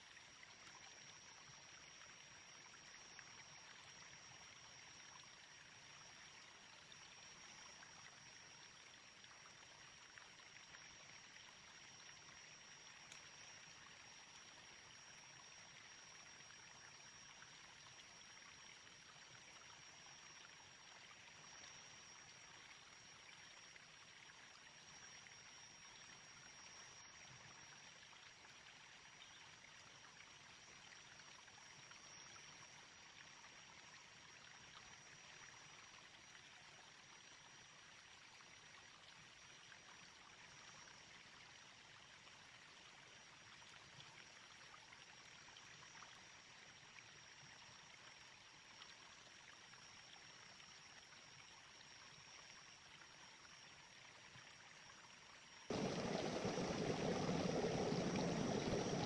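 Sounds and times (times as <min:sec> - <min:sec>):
river flowing over stones: 0:55.7 - 0:59.0.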